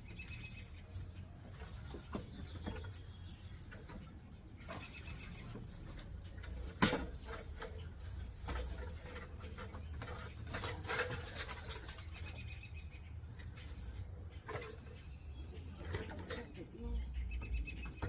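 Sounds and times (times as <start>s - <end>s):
nest sticks rustling and scraping: 0.8s - 14.8s.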